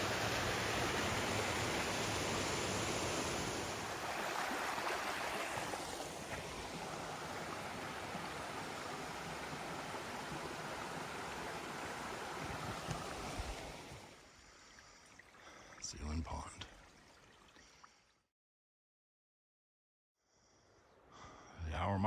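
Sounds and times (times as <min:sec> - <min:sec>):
stream water rushing: 0:00.0 - 0:17.8.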